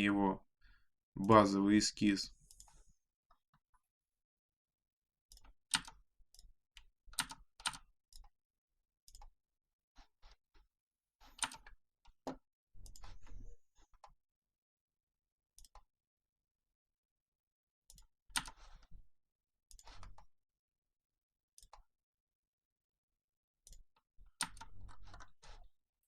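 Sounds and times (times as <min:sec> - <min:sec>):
keyboard and mouse clicks: 0:05.3 - 0:08.3, 0:09.1 - 0:09.4, 0:11.2 - 0:14.2, 0:15.6 - 0:15.9, 0:17.9 - 0:18.9, 0:19.7 - 0:20.3, 0:21.6 - 0:21.9, 0:23.6 - 0:23.8, 0:24.4 - 0:25.7.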